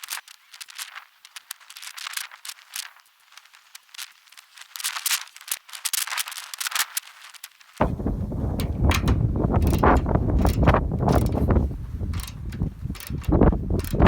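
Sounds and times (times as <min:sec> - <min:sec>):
parts and tools clicking and rattling: 0:07.8 - 0:14.0.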